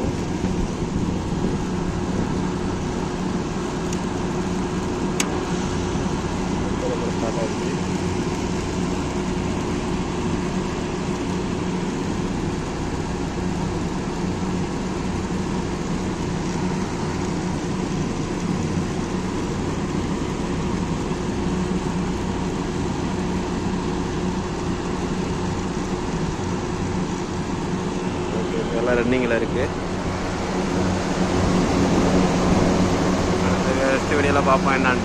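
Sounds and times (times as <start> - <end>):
air conditioner running: 0.0 - 35.0.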